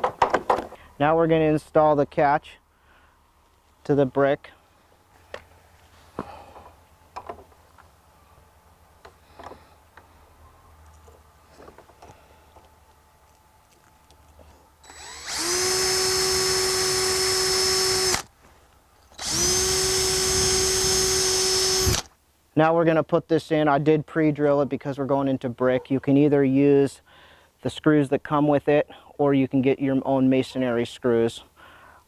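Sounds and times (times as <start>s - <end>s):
power drill whining: 14.8s - 18.3s, 19.2s - 22.1s.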